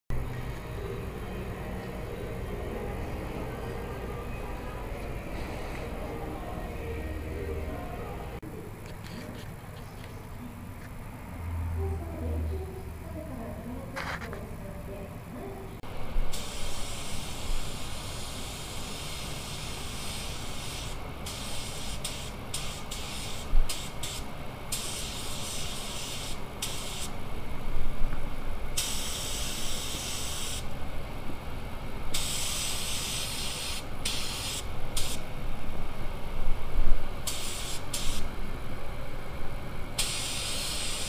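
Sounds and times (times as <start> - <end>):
low background noise: 0.1 - 41.0
paint spray gun hissing: 16.3 - 27.2, 28.8 - 30.7, 32.1 - 35.2, 37.3 - 38.3, 40.0 - 41.0.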